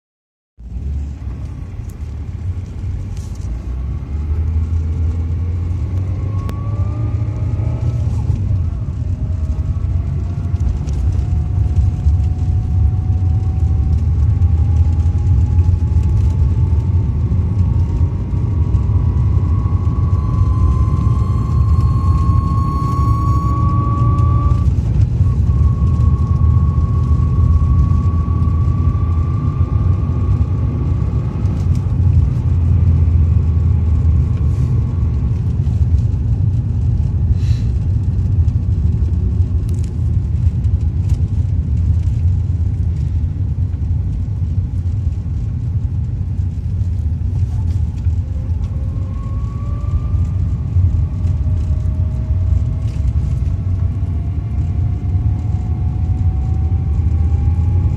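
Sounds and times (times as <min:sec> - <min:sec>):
lower rising tone: 0:00.6 - 0:37.0, 0:47.4 - 0:57.9
car engine and road rumble: 0:00.6 - 0:57.9
thin engine whistle: 0:18.7 - 0:30.6.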